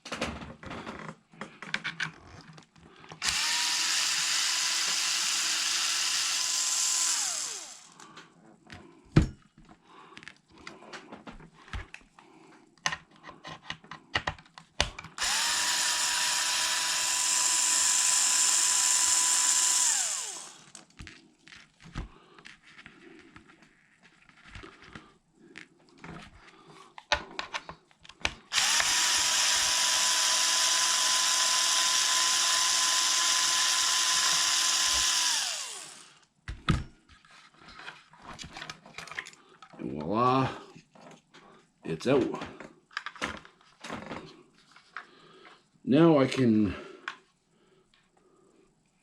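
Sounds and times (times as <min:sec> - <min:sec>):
clicks of small parts and tools: 0:00.0 - 0:03.4, 0:12.8 - 0:15.3, 0:25.6 - 0:29.7, 0:37.1 - 0:40.1, 0:42.2 - 0:45.6
electric screwdriver whining: 0:03.2 - 0:08.0, 0:15.1 - 0:20.9, 0:28.3 - 0:36.2.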